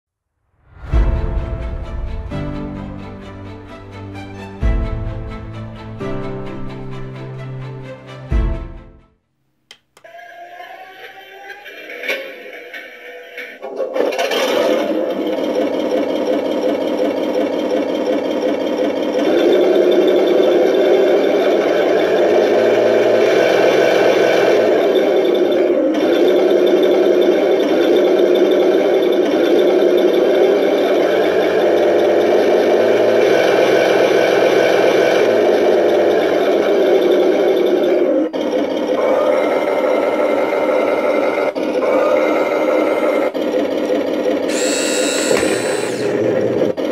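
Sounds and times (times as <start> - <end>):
simulated tank engine from speaker: 17.9 - 37.9.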